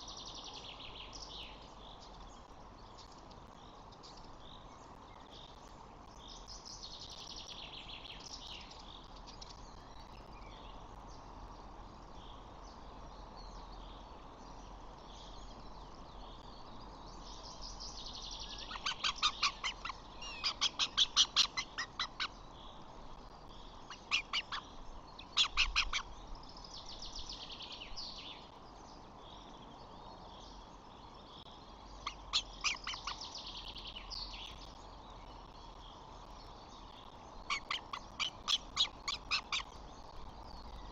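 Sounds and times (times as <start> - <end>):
faint bird twittering: 0.0 - 40.9
sharp repeated bird calls: 18.1 - 22.4, 23.8 - 26.2, 32.0 - 34.6, 37.4 - 39.9.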